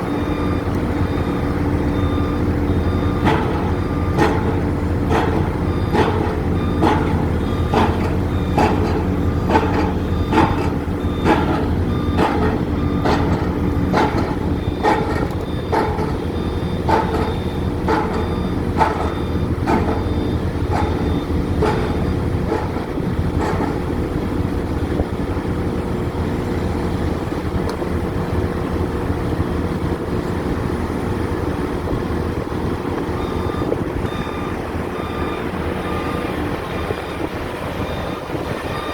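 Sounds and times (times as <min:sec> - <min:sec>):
warning alarm beeping rapidly: 0:00.0 - 0:24.0, 0:33.2 - 0:38.9
crane diesel engine running: 0:00.0 - 0:38.9.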